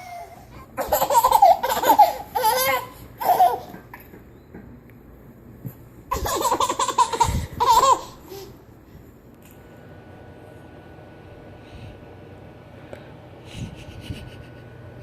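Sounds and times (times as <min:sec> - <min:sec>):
baby giggling: 0:00.0 - 0:03.9, 0:06.1 - 0:08.5.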